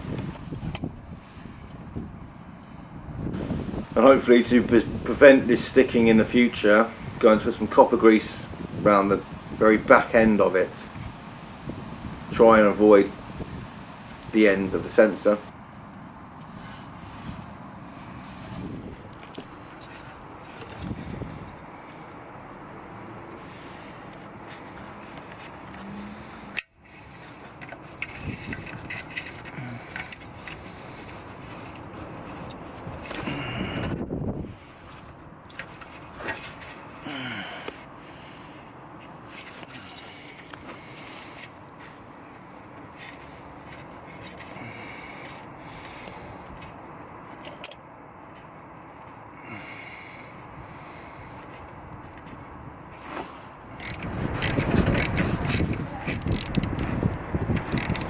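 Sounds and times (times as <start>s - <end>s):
outdoor background noise: 0.0s - 58.0s
clicks and scrapes of hand work: 26.5s - 33.3s, 53.0s - 58.0s
hands rubbing and scraping part: 53.0s - 58.0s
light clicks: 57.5s - 58.0s.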